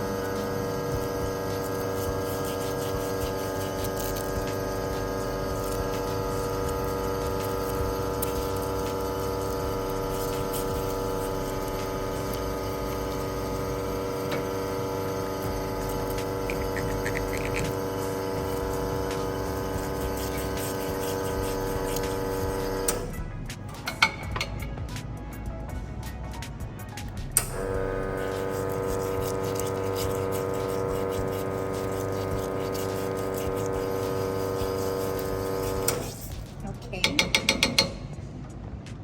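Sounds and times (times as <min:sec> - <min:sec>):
espresso machine pump humming: 0:00.0 - 0:23.2, 0:27.4 - 0:36.3
water running: 0:01.2 - 0:22.9, 0:27.6 - 0:36.0.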